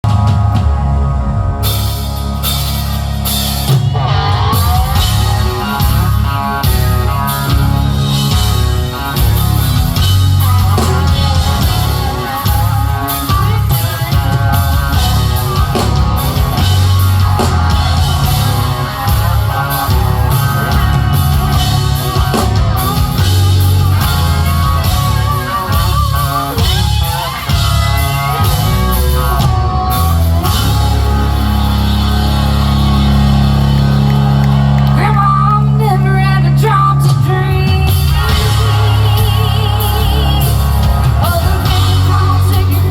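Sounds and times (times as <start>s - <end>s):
bass guitar: 0.0s - 42.9s
drum kit: 0.0s - 42.9s
electric guitar lead line: 0.0s - 42.9s.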